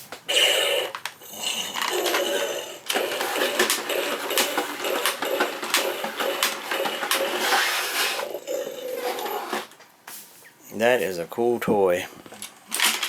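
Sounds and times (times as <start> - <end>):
toy leg mechanism clicks: 0.3 - 8.4, 12.3 - 13.0
toy motor whirring: 0.3 - 9.8.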